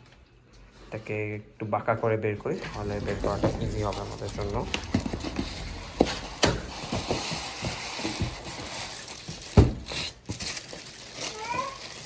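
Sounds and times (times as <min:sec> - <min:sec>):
cardboard and foam creaking: 0:02.4 - 0:12.0.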